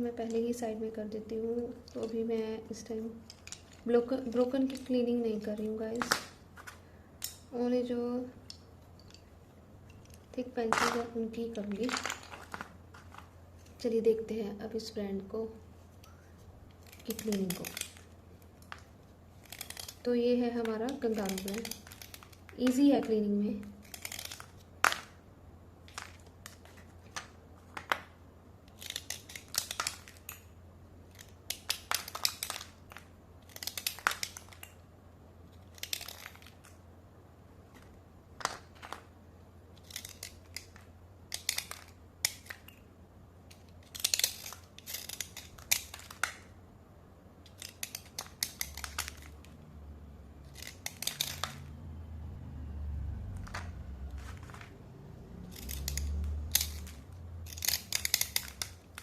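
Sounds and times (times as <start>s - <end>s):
slate pencils scraping: 15.8s - 24.8s.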